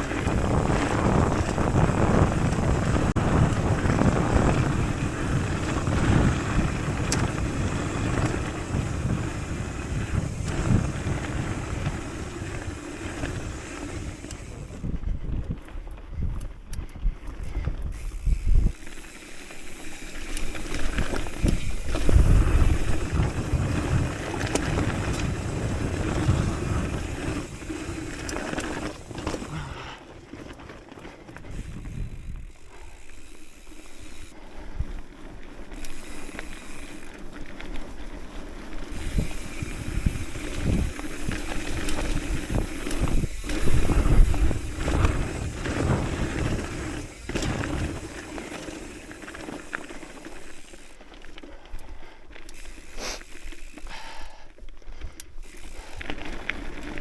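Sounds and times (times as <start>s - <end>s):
wind buffeting microphone: 0.0s - 30.4s, 31.0s - 51.0s
bike frame and chain rattling: 0.0s - 57.0s
bike tyres on gravel: 0.0s - 57.0s.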